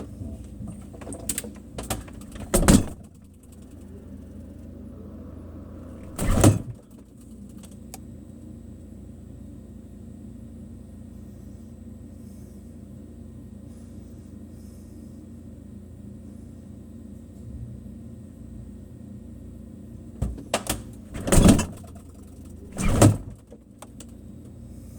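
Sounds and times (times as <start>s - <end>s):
refrigerator humming: 0.0s - 14.4s, 15.3s - 24.9s
refrigerator door clicks: 1.0s - 3.9s, 6.0s - 6.8s, 20.2s - 24.1s
refrigerator door banging: 1.8s - 4.0s, 6.0s - 6.8s, 20.2s - 23.4s.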